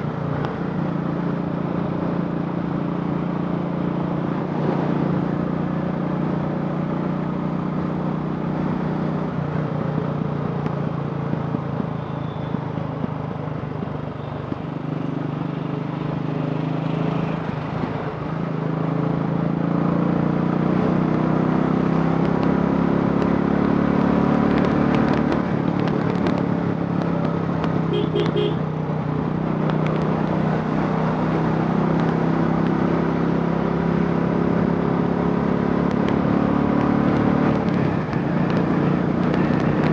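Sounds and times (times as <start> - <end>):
motorcycle engine running: 22.0 - 30.6.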